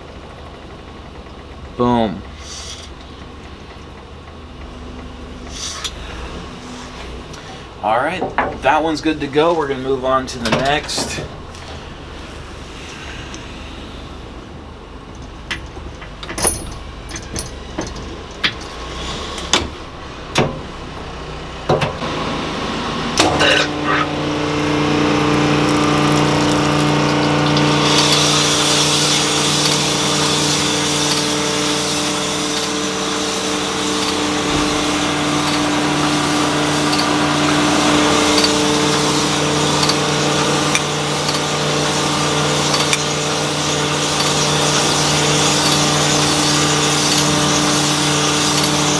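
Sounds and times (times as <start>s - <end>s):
machine motor humming: 0.0s - 48.9s
hiss of cutting: 5.4s - 7.8s, 18.6s - 48.9s.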